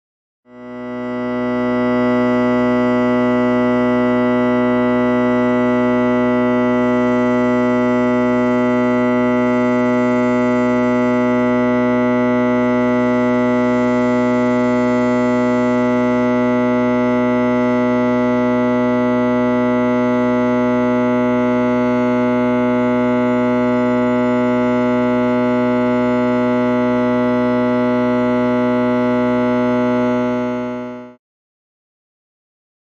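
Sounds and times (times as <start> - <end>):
low electric hum: 0.5 - 31.2.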